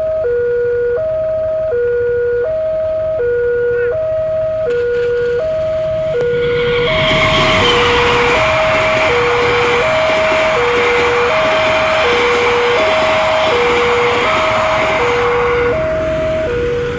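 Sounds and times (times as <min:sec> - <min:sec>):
two-tone crossing alarm: 0:00.0 - 0:16.9
train rushing past: 0:04.7 - 0:16.9.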